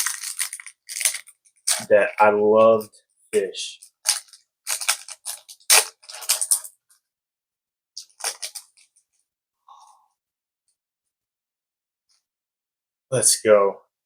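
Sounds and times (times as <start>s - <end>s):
packaging crinkling and rustling: 0.0s - 2.2s, 3.8s - 6.8s, 8.0s - 8.9s.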